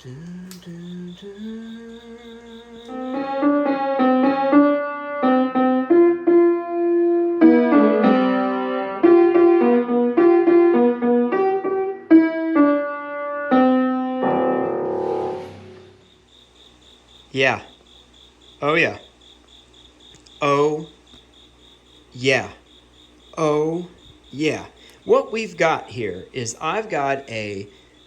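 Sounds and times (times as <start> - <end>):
piano melody: 2.9 - 16.1.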